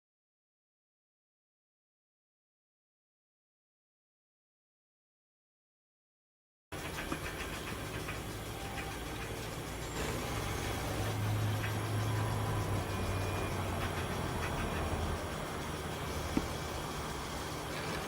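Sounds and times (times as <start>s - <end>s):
machinery humming: 6.8s - 18.0s.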